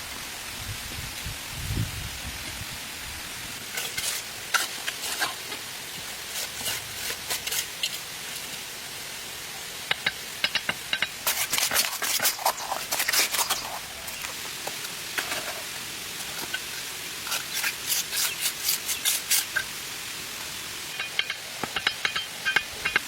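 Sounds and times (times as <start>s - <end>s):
rain hissing: 0.0s - 23.0s
short clicks and scrapes: 10.9s - 13.8s.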